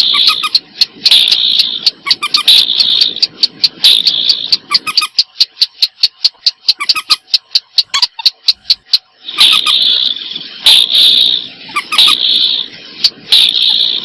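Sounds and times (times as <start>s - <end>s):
waterbird harsh chattering: 2.1s - 2.6s.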